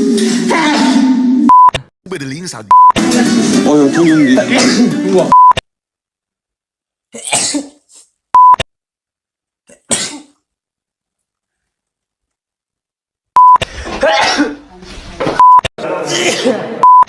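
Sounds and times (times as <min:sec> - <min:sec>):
short steady beep: 0:02.7 - 0:03.0, 0:08.4 - 0:08.6, 0:13.4 - 0:13.6
person sneezing: 0:07.1 - 0:08.2, 0:13.8 - 0:14.7.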